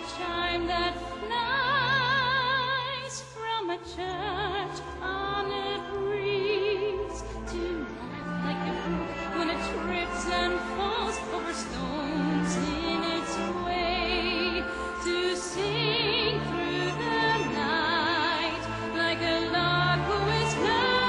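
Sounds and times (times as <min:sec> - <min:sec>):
operatic singing with vibrato: 0:00.0 - 0:21.0.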